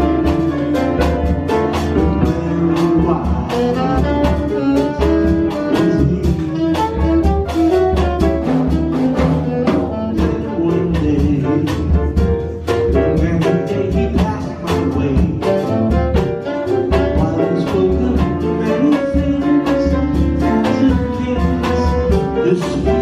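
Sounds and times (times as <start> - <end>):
low bass line: 0.0 - 23.0.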